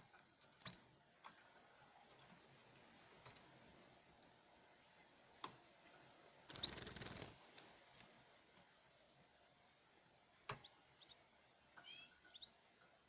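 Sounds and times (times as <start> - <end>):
birds rustling in a cage: 0.0 - 8.7.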